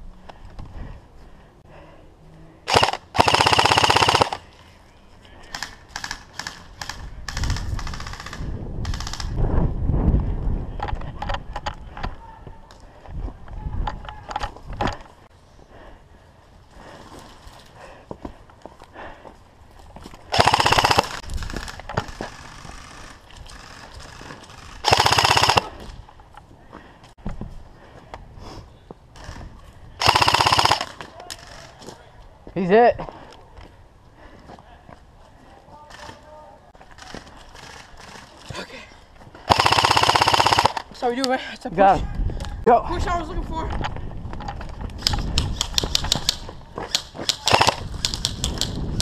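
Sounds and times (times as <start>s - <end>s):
airsoft rifle firing bursts: 2.7s - 4.4s, 5.5s - 9.3s, 20.3s - 25.7s, 30.0s - 31.6s, 39.5s - 40.9s, 45.5s - 48.8s.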